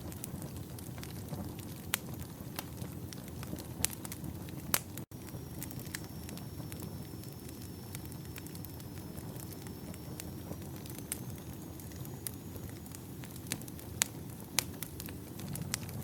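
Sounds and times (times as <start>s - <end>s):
campfire crackling and popping: 0.0s - 16.0s
low rumble of flames: 0.0s - 16.0s.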